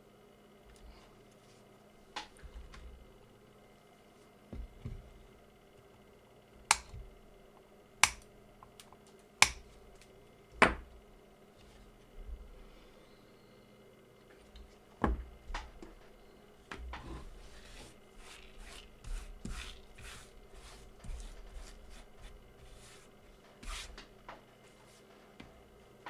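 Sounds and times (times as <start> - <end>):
scrubbing strokes: 17.0 - 24.0.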